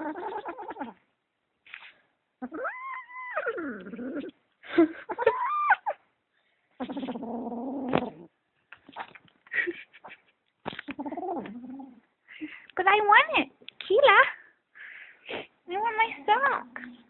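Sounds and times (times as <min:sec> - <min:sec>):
kitten growling yowl: 0:00.0 - 0:01.0, 0:06.8 - 0:08.3, 0:10.9 - 0:12.0.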